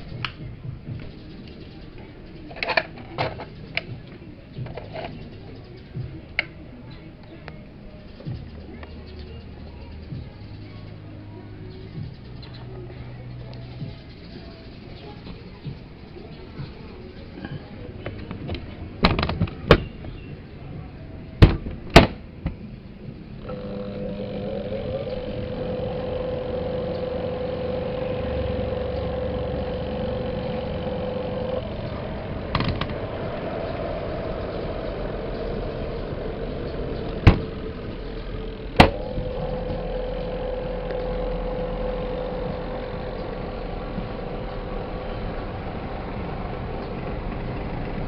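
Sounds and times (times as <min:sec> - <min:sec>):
washing machine motor hum: 0:23.1 - 0:48.0.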